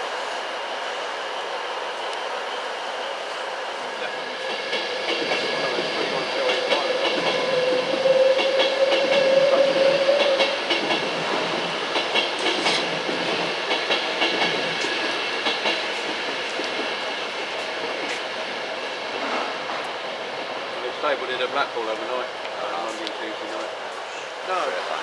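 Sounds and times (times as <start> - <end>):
train rumble: 0.0 - 25.0
train wheels clicking over rail joints: 4.4 - 18.4.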